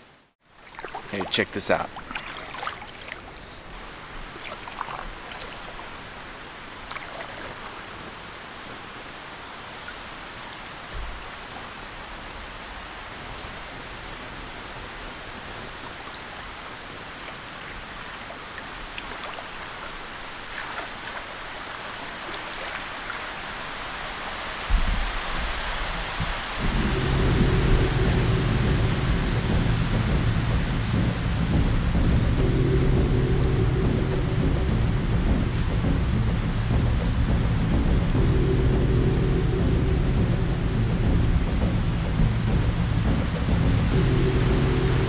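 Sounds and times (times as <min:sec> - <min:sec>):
river water rushing: 0:00.5 - 0:45.0.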